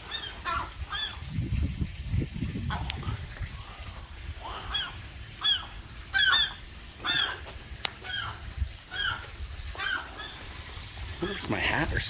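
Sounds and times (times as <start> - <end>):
seagull alarm calls: 0.0 - 1.2, 4.4 - 10.6.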